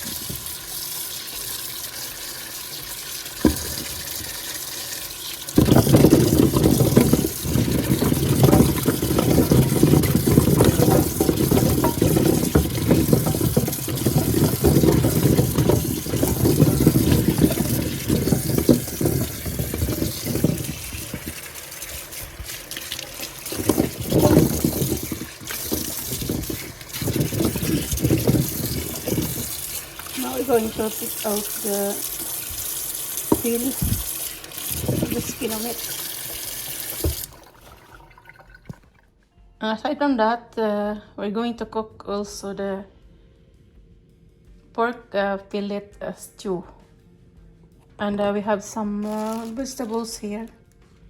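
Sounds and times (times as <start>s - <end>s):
potatoes being washed: 0.0s - 39.0s, 48.8s - 50.5s
tap water running into sink: 0.0s - 39.0s, 49.0s - 50.0s.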